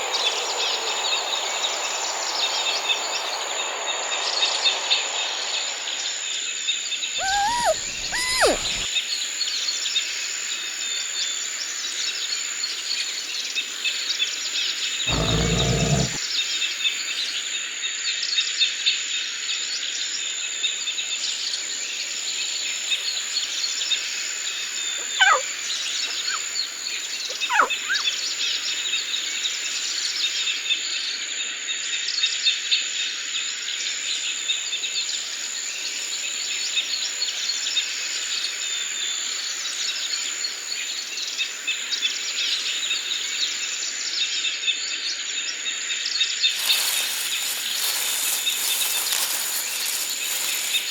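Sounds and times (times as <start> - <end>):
bird calls falling in pitch: 7.2 - 8.9, 27.4 - 28.1
birds chirping: 7.2 - 8.9, 15.1 - 16.2, 25.0 - 26.5, 27.3 - 28.2, 46.5 - 50.9
high insect drone: 15.1 - 16.2, 46.5 - 50.9.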